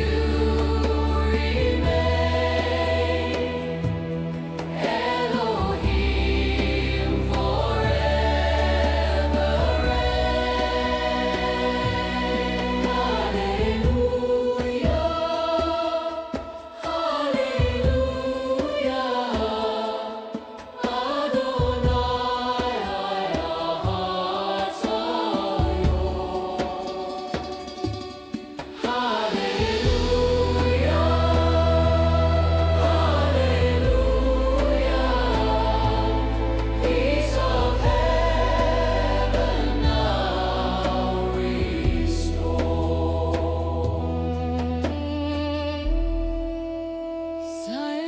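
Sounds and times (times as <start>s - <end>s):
choir singing: 0.0s - 45.8s
light percussion: 0.0s - 47.3s
sustained low bass notes: 29.8s - 46.9s.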